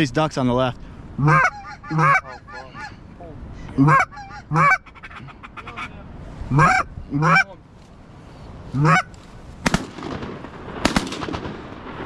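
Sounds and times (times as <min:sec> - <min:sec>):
wind noise: 0:00.0 - 0:12.0
goose honking: 0:01.2 - 0:03.0, 0:03.8 - 0:07.5, 0:08.8 - 0:09.1
sharp cracks: 0:09.6 - 0:12.0.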